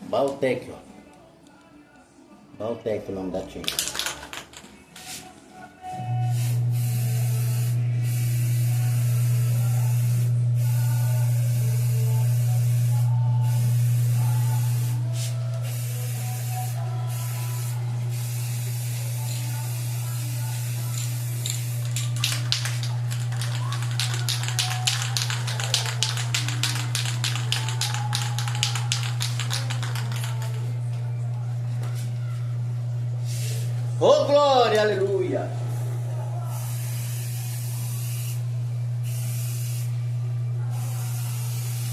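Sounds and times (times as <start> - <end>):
paint spray gun buzzing: 6.2 - 30.8, 36.5 - 40.1, 40.7 - 41.9
paint spray hissing: 6.4 - 30.6, 36.5 - 40.0, 40.7 - 41.9
rapid irregular clicking: 21.4 - 30.6.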